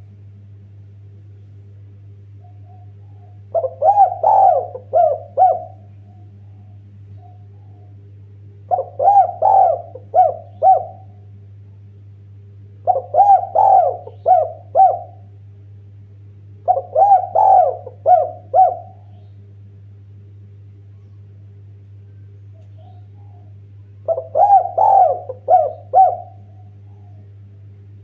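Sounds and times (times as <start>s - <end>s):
steady low hum: 0.0s - 28.0s
dove cooing: 2.4s - 11.4s, 12.8s - 15.4s, 16.6s - 19.4s, 22.1s - 27.5s.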